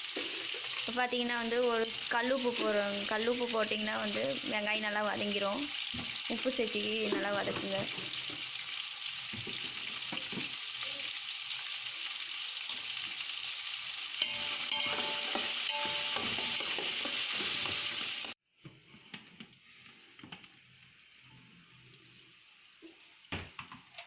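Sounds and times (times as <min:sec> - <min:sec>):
onions sizzling in hot oil: 0:00.0 - 0:18.4, 0:19.5 - 0:24.0.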